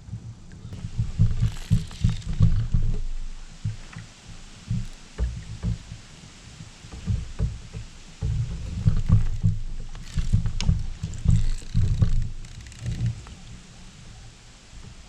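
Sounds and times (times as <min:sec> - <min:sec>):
thumps and knocks on kayak hull: 0:00.7 - 0:13.3
faint light clicks: 0:08.6 - 0:13.6.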